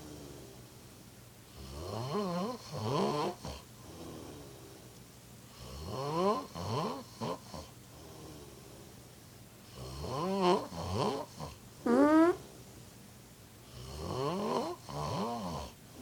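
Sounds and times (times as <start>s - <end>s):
quiet breathing: 0.0s - 1.6s, 3.3s - 5.7s, 6.9s - 9.9s
person snoring loudly: 13.8s - 15.8s.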